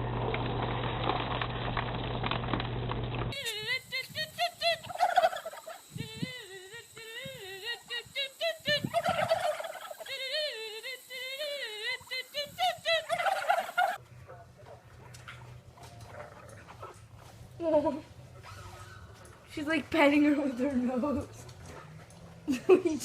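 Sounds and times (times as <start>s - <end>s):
animal call wavering notes: 3.4s - 14.0s.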